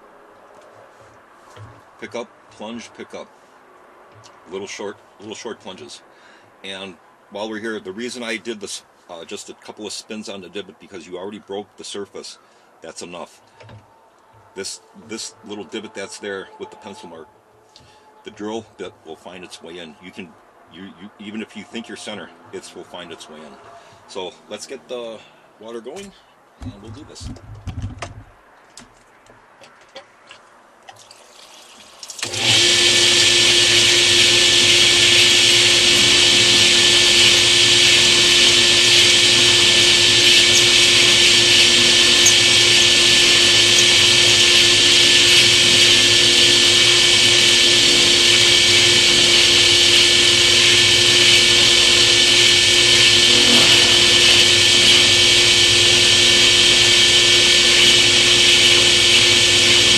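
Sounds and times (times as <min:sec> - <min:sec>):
water flowing: 0:30.2 - 0:32.3
drill press motor hum: 0:32.2 - 0:59.9
drill bit hissing through stone: 0:32.3 - 0:59.9.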